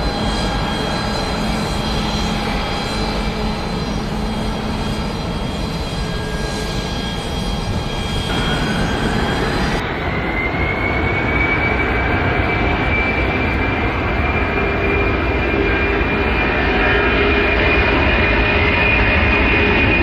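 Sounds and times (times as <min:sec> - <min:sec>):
aircraft engines whining: 0:00.0 - 0:20.0.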